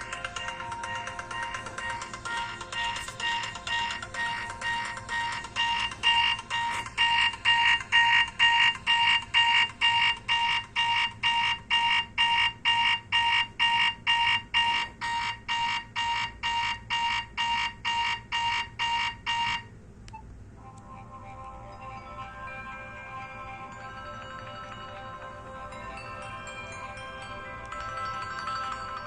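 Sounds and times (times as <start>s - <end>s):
fast electronic alarm beeps: 0.0s - 19.7s.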